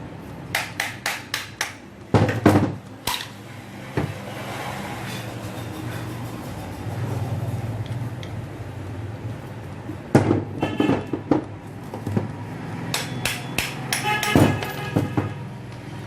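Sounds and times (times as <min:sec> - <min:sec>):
metallic knocks and clinks: 0:12.9 - 0:15.1.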